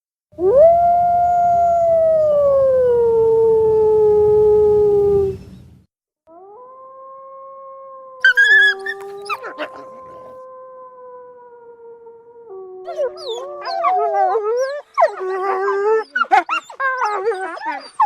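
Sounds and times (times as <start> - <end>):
wolf howling: 6.3 - 18.0.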